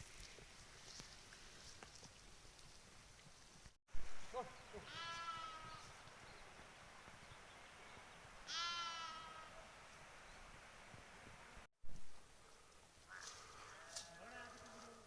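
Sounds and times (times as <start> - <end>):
livestock bleating: 4.7 - 5.9, 8.5 - 9.6, 13.1 - 15.0.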